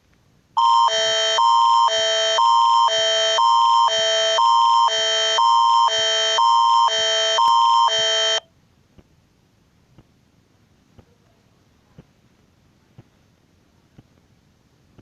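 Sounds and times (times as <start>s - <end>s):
two-tone electronic alarm: 0.6s - 8.5s.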